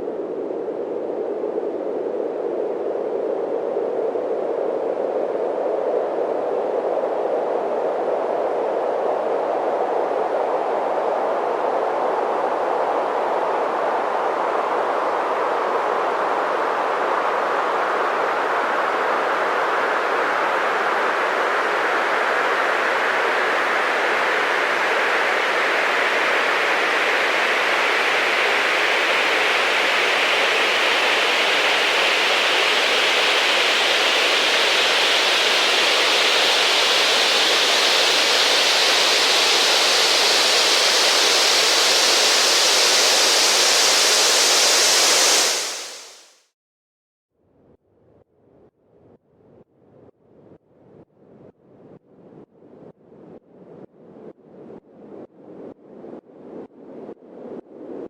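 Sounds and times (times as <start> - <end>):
rising white noise sweep: 12.6 - 46.3.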